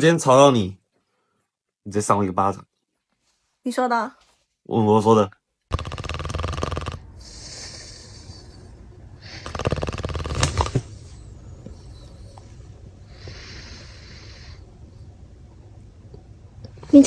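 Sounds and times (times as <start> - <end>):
person snoring loudly: 5.7 - 8.6, 9.3 - 11.1.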